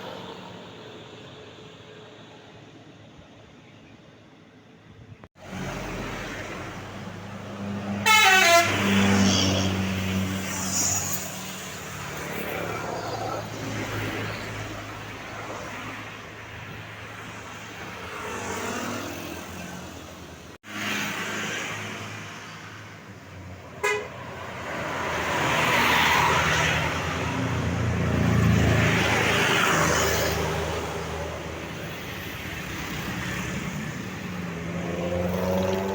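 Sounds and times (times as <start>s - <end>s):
bus engines humming: 4.1s - 35.9s
musical bus horns: 7.9s - 9.8s, 23.8s - 24.2s.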